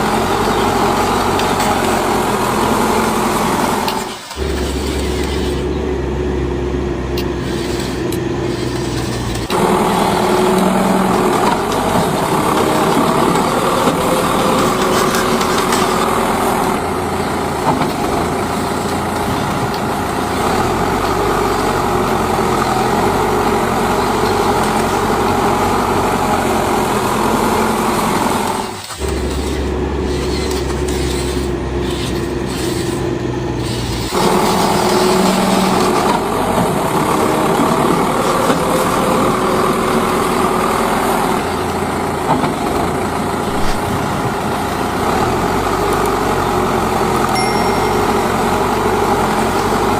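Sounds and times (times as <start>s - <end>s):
deeper duller hum: 0.0s - 30.0s
toy truck motors droning: 0.0s - 49.9s.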